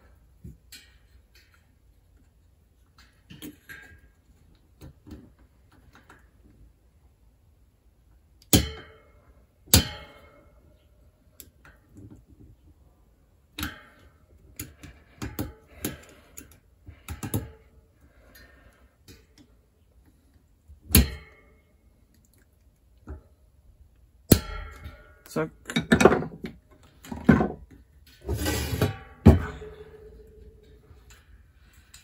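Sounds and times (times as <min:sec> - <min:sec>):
metal parts and tools knocking: 0:24.3 - 0:27.8.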